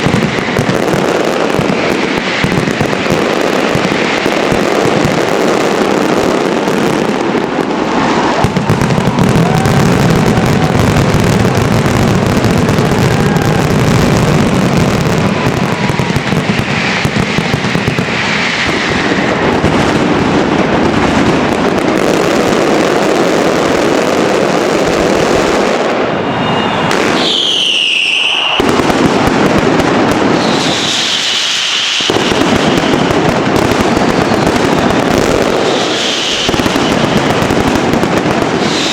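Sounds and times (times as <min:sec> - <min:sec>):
firework bangs and crackling: 0:00.0 - 0:38.9
whistling fireworks: 0:00.0 - 0:38.9.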